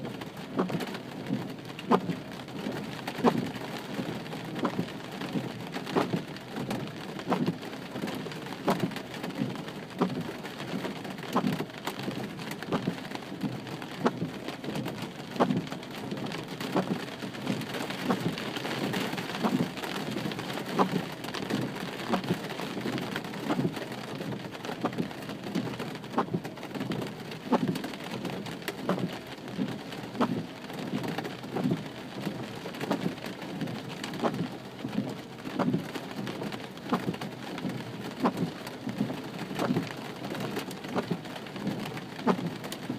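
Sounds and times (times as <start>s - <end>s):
rain falling: 0.0s - 42.9s.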